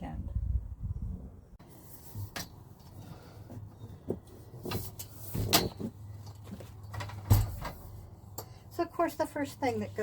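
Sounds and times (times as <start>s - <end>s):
knocks and clunks of handling: 2.2s - 8.5s.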